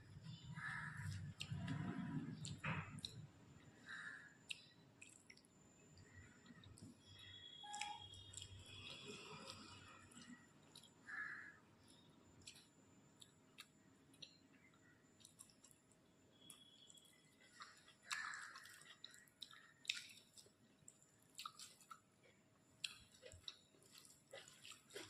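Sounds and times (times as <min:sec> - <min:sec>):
close chewing with wet smacks: 0:01.0 - 0:03.3, 0:04.4 - 0:07.0, 0:07.7 - 0:11.0, 0:11.8 - 0:25.0
mouth clicks: 0:07.6 - 0:10.9.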